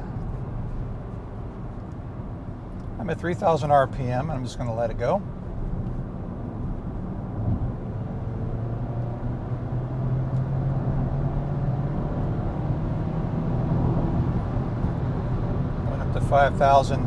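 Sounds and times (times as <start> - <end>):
road noise: 0.0 - 17.0
car engine accelerating: 5.7 - 17.0.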